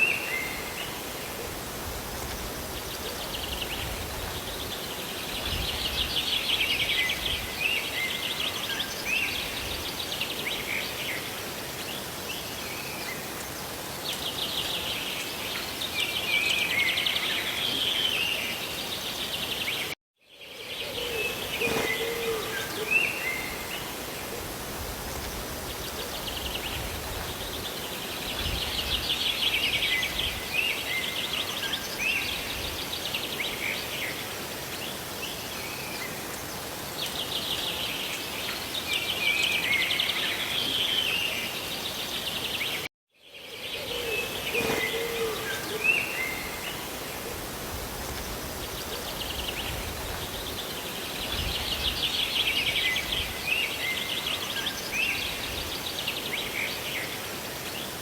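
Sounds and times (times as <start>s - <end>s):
rain and falling water: 0.0s - 20.0s, 21.3s - 42.9s, 44.2s - 58.0s.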